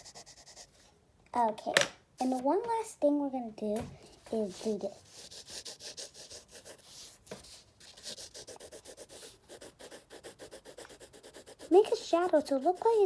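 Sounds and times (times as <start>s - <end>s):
pencil scribbling on paper: 0.0s - 0.8s, 4.3s - 13.0s.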